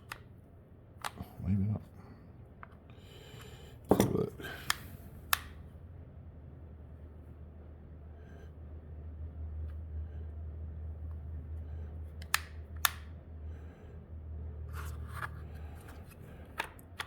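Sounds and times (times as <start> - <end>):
soft clicking and handling: 0.0 - 0.4, 1.0 - 1.4
steady low hum: 0.0 - 17.0.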